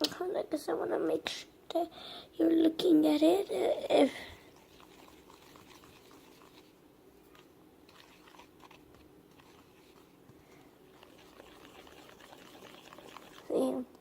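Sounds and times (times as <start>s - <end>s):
faint sticky clicks of slime stirring: 4.3s - 13.5s.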